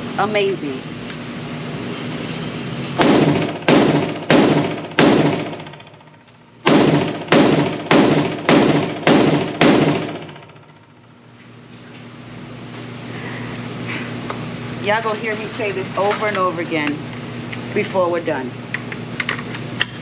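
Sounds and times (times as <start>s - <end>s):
rifle shots with ringing echo: 3.0s - 6.0s, 6.6s - 10.6s.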